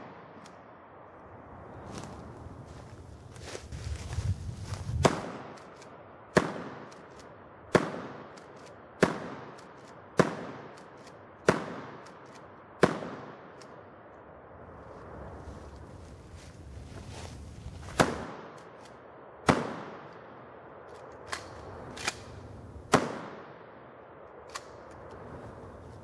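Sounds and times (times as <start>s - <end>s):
shotgun shots echoing: 5.0s - 7.1s, 7.7s - 12.2s, 12.8s - 13.6s, 17.9s - 18.8s, 19.4s - 20.3s, 21.3s - 23.9s.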